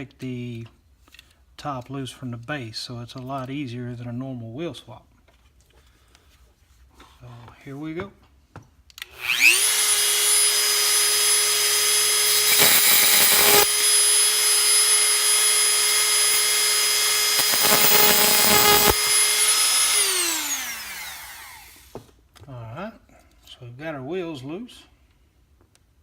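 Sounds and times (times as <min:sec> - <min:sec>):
rotary tool grinding metal: 0:09.1 - 0:21.9
rotary tool high whine: 0:09.1 - 0:22.0
rotary tool spinning down: 0:09.1 - 0:22.0.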